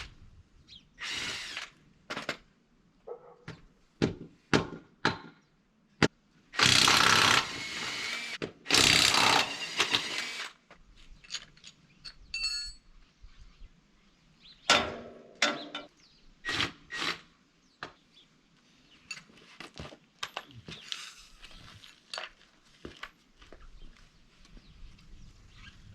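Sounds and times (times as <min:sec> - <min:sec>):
metallic clanks and knocks: 0:14.7 - 0:15.9.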